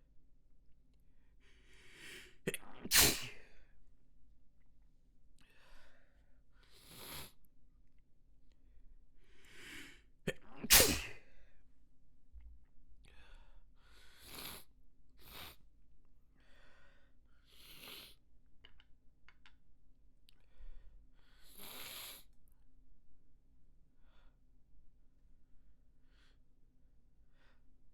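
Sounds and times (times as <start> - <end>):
noisy breaths: 1.4 - 2.4, 5.4 - 7.4
person sneezing: 2.5 - 3.4, 10.3 - 11.2.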